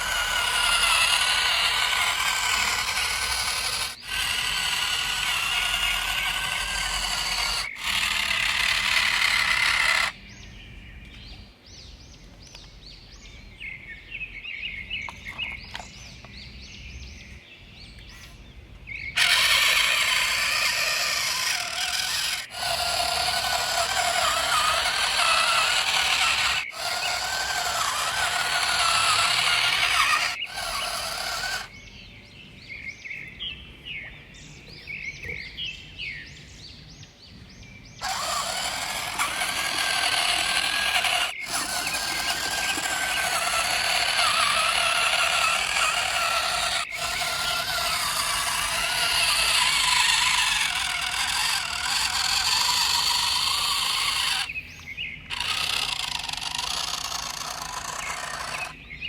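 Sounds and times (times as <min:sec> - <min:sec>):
small electric motors whining: 0:00.0 - 0:10.2, 0:19.2 - 0:31.8, 0:38.0 - 0:58.8.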